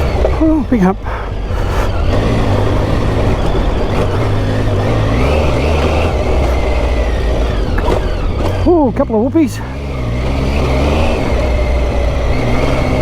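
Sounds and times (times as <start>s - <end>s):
wind noise: 0.0s - 8.6s
motorcycle engine running: 0.0s - 13.0s.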